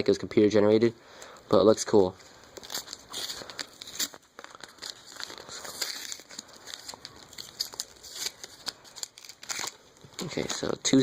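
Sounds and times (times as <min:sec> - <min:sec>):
foil wrapper crinkling: 0:02.3 - 0:11.0.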